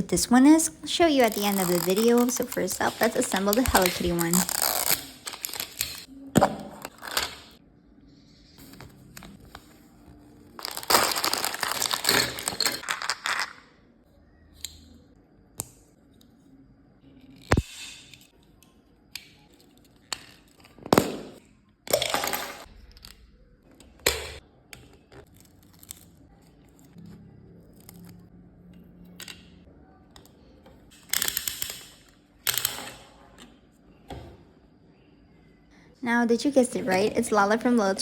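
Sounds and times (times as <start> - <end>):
plastic packaging crinkling and tearing: 1.2 - 6.1, 10.5 - 13.5.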